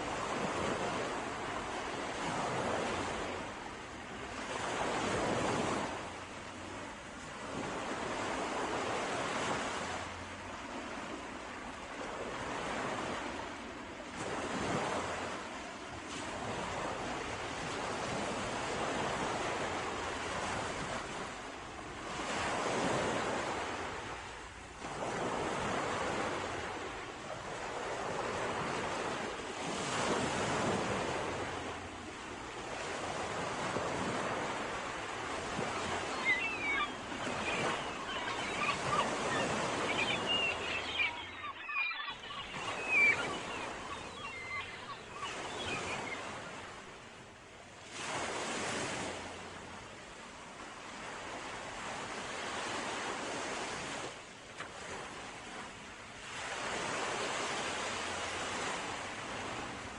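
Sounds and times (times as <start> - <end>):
sea waves washing in: 0.0 - 54.2
wind: 0.0 - 59.9.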